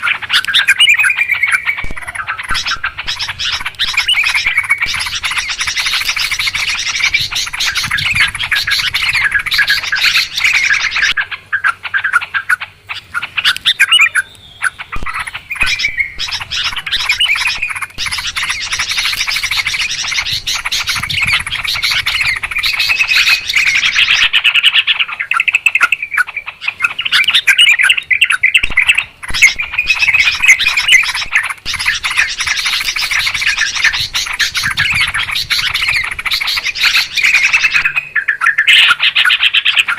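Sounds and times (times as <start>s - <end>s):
birds chattering: 0.0s - 39.9s.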